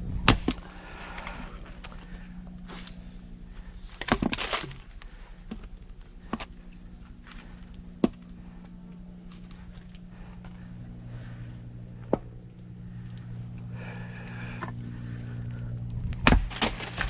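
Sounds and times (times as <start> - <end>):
firewood splitting knocks and cracks: 0.0 - 2.9, 3.8 - 8.3, 16.1 - 17.0
faint low hum: 0.0 - 17.0.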